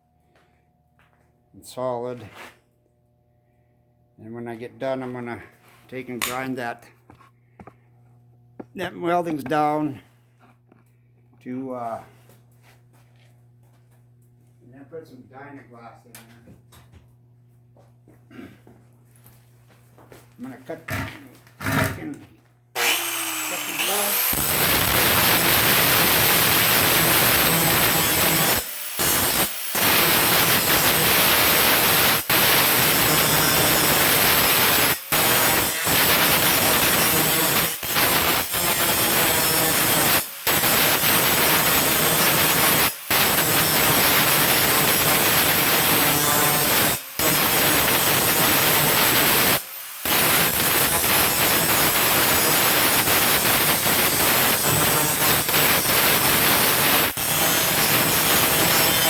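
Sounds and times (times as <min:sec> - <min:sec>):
welding arc crackling and hissing: 0:22.8 - 0:59.0.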